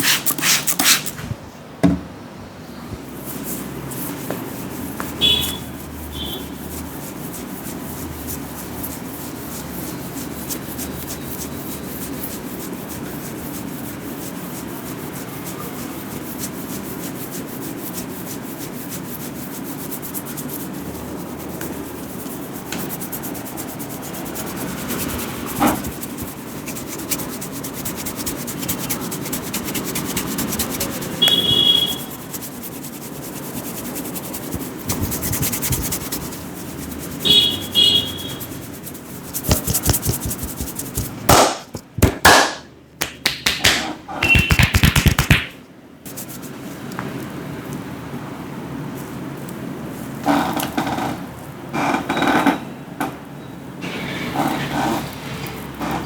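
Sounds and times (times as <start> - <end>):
hands rubbing scalp and hair: 3.1 - 46.6.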